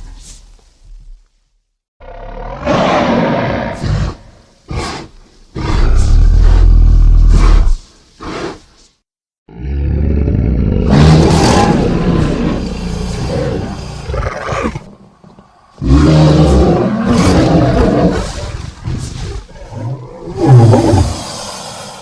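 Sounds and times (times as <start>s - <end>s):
deep creature roars: 9.5s - 14.9s, 15.8s - 18.5s.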